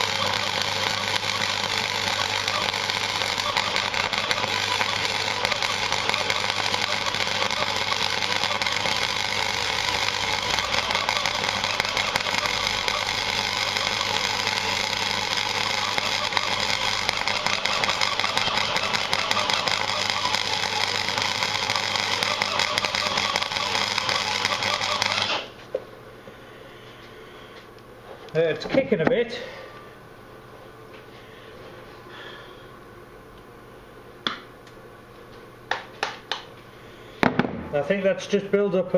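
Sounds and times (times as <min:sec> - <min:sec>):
welder arc crackling: 0:00.0 - 0:25.6.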